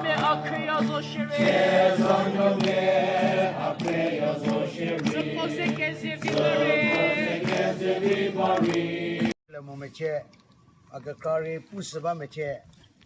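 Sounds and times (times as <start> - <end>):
group singing a hymn: 0.0 - 9.4.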